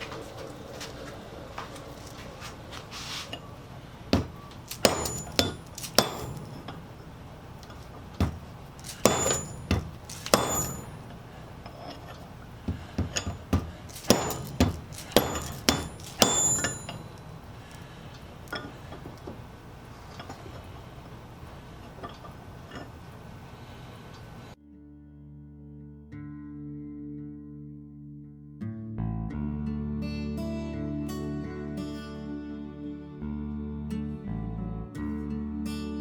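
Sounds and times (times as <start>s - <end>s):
steel tools clinking on metal: 4.2s - 11.2s, 13.0s - 17.5s.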